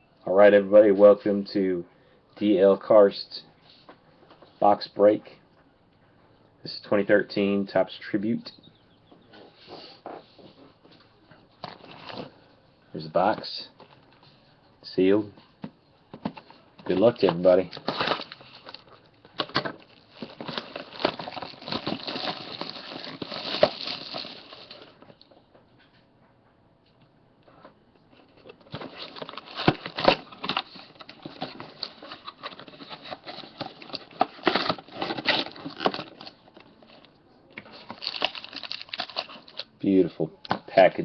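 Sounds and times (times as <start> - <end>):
shrink-wrap and cardboard crackling: 16.9 - 25.0, 28.4 - 39.7.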